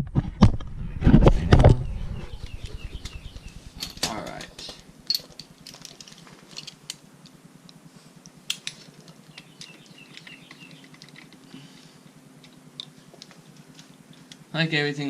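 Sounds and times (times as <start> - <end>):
faint steady hum: 0.1 - 15.0
metal clicks of hand tools: 8.5 - 13.3.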